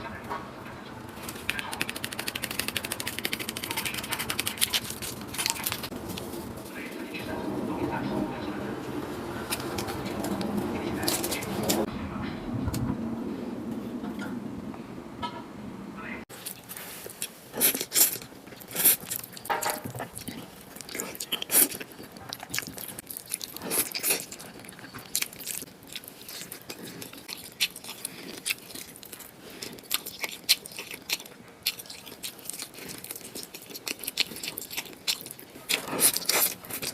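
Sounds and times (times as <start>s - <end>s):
mouth and utensil noises: 0.0s - 12.9s, 16.3s - 36.9s
person chewing and biting: 1.2s - 6.0s, 16.3s - 36.9s.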